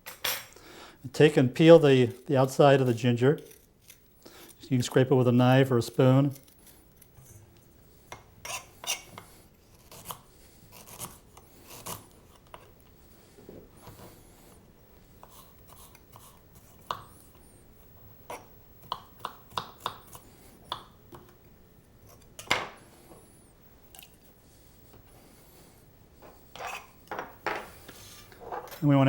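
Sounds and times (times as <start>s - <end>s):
knife scraping ginger skin: 2.2s - 4.6s, 5.5s - 7.4s, 8.4s - 12.8s
knife chopping on cutting board: 18.3s - 21.3s.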